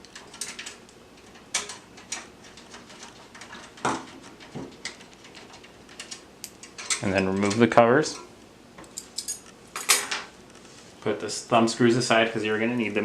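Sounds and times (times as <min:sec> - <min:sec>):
small metal clicks and knocks: 0:00.0 - 0:10.2.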